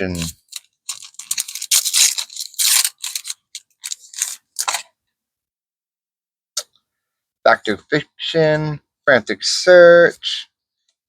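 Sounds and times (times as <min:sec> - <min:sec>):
packaging tearing and crackling: 0:00.1 - 0:04.8.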